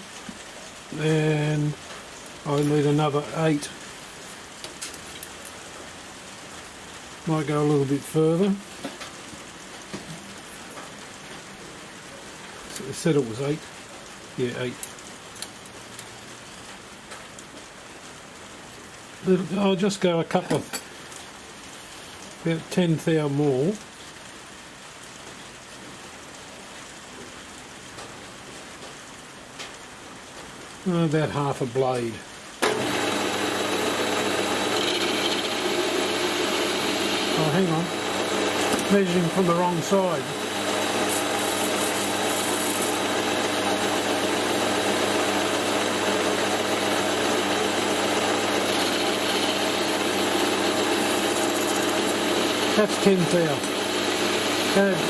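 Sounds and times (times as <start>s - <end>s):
constant hiss: 0.0s - 32.7s, 33.9s - 43.8s
metal lathe hissing: 32.6s - 55.0s.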